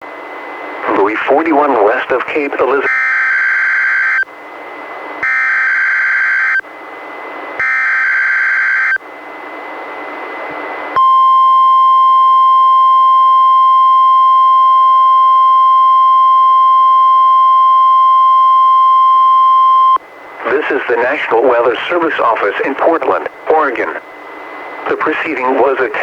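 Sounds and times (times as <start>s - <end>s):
radio hiss: 0.8s - 2.9s, 20.4s - 26.0s
steady warning alarm tone: 0.9s - 4.4s, 5.2s - 9.0s, 11.0s - 26.0s.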